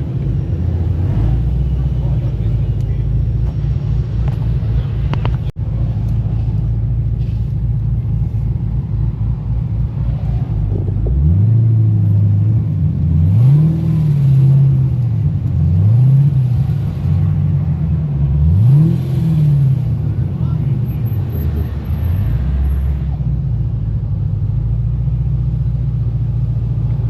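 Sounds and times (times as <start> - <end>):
car engine revving: 8.1 - 23.3.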